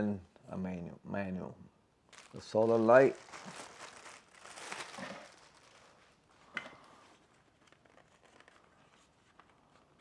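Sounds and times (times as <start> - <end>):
packaging rustling: 2.1 - 10.0.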